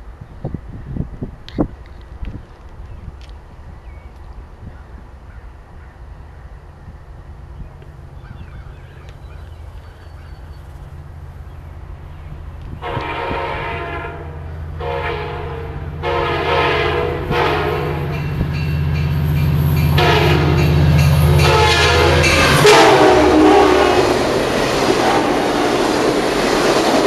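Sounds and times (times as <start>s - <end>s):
diesel locomotive engine rumble: 0.0s - 27.0s
locomotive horn blasts: 12.8s - 18.6s, 19.8s - 25.9s.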